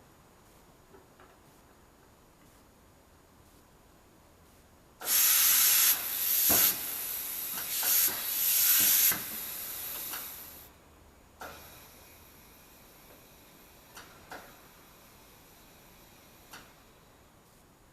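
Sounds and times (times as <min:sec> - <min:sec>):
compressed air hissing: 0:05.0 - 0:10.7, 0:11.4 - 0:17.1.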